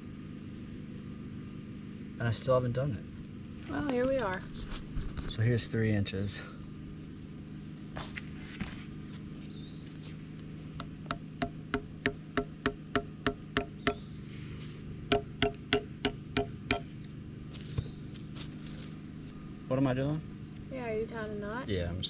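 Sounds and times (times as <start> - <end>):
hammer striking a nail: 10.8 - 14.1, 15.1 - 17.0.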